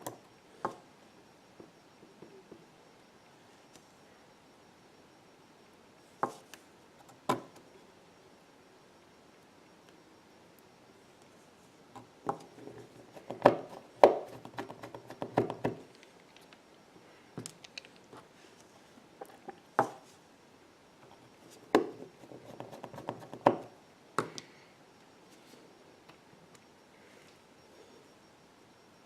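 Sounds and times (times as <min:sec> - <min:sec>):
small tools clicking and tapping: 0:17.4 - 0:18.1.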